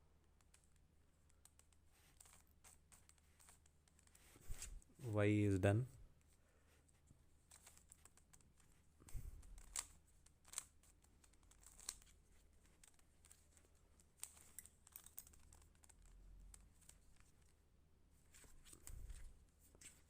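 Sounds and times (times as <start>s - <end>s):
puzzle cube twisting clicks: 7.5s - 8.4s, 9.1s - 17.3s.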